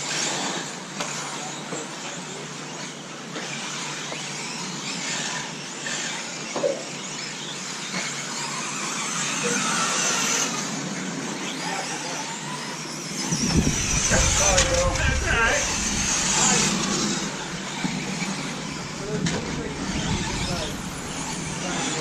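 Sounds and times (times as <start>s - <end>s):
rc car engines buzzing: 0.0s - 22.0s.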